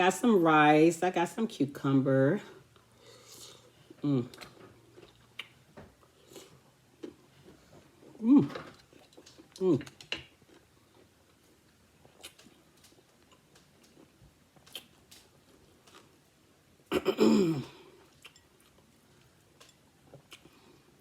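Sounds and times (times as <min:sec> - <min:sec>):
person chewing: 0:02.8 - 0:16.2, 0:17.6 - 0:21.0.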